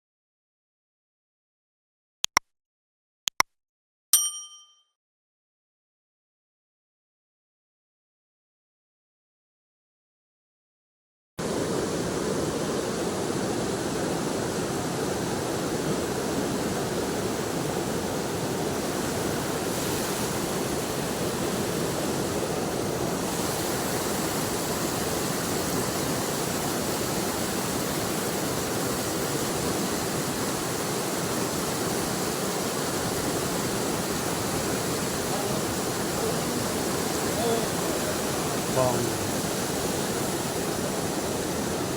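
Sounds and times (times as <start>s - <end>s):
river water rushing over rocks: 15.8s - 41.9s.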